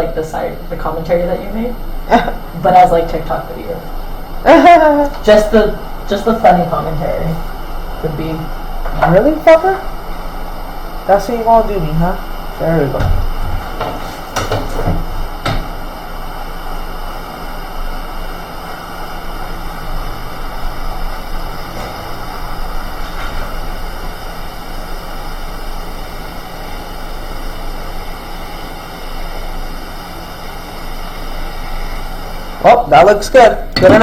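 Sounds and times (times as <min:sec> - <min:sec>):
hot air station hissing: 0:00.0 - 0:34.0.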